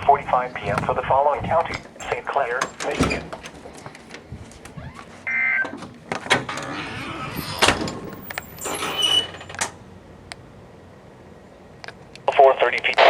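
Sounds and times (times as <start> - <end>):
door clicks: 1.5 - 9.8
door sliding: 1.5 - 9.8.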